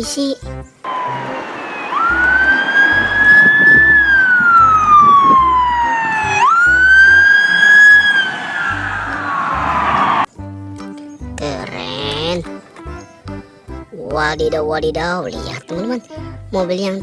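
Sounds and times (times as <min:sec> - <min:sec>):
toy police siren wail: 0:00.9 - 0:09.3.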